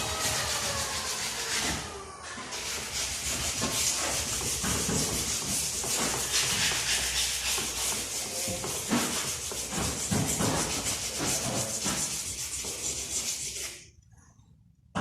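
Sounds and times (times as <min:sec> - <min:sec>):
abrasive scrubbing strokes: 0:02.5 - 0:13.8.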